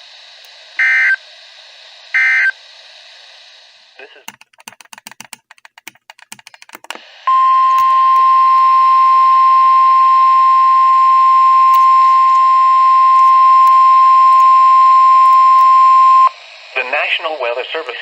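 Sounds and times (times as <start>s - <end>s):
radio hiss: 0.0s - 4.3s, 6.9s - 18.0s
steady alarm beep: 0.8s - 1.2s, 2.1s - 2.6s, 7.3s - 16.4s.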